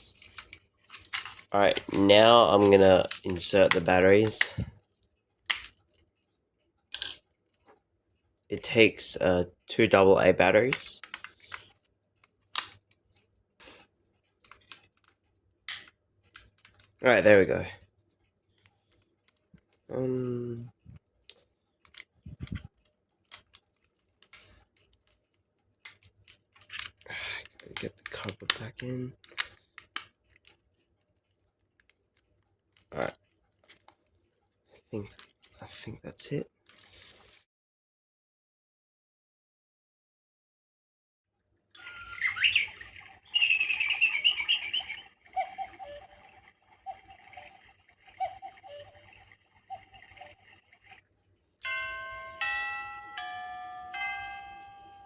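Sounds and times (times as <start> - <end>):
recorded birdsong chirping: 41.7 - 51.3
two-note cuckoo call: 41.8 - 50.6.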